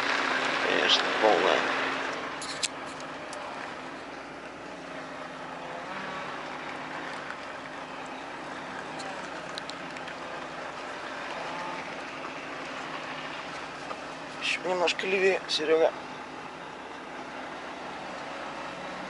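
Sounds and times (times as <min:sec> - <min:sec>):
truck diesel engine running: 0:00.0 - 0:19.0
faint clicks: 0:08.7 - 0:10.2.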